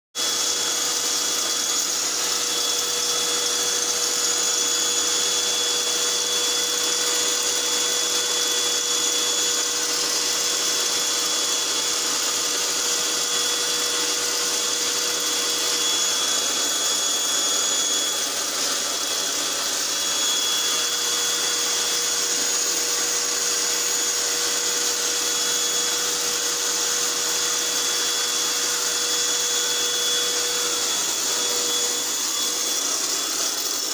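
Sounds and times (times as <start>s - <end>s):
small motor machine whining: 0.2s - 33.9s.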